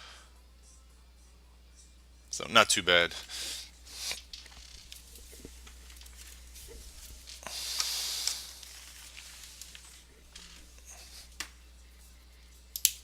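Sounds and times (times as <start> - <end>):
packaging rustle: 4.3 - 10.6.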